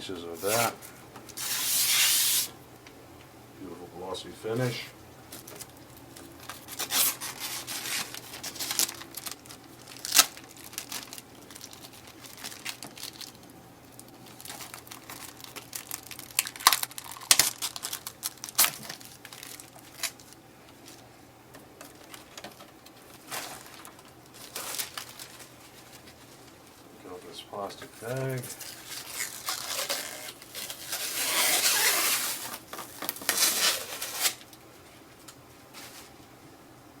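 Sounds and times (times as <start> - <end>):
plastic film crinkling and tearing: 0.4 - 0.8, 1.4 - 2.5, 5.3 - 21.0, 21.8 - 26.8, 27.9 - 34.6.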